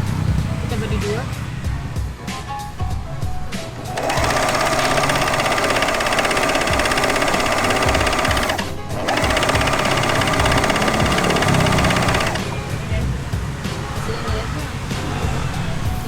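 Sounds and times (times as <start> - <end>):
overlock sewing machine running: 3.8 - 12.7.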